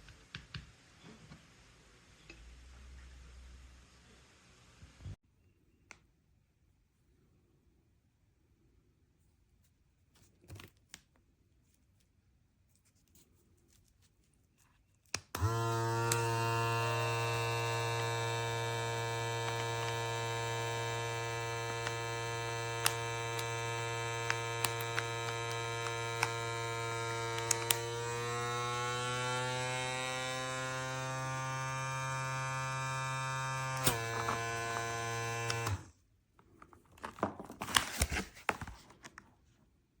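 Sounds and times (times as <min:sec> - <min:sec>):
electric vacuum pump buzzing: 0:15.3 - 0:35.9.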